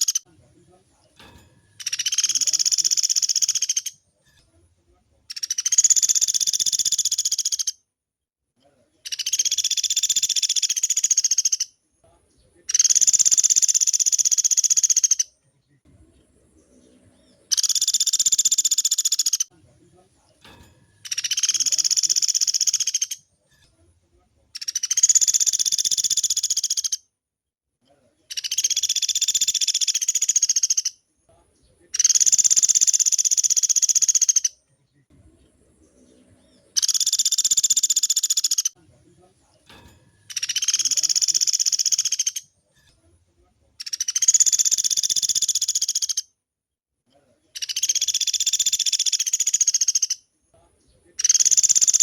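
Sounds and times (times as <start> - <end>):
woodpecker rolling trill: 1.7 - 4.0, 5.3 - 7.7, 17.2 - 19.5, 21.0 - 23.2, 36.4 - 38.8, 40.2 - 42.5, 43.9 - 46.2.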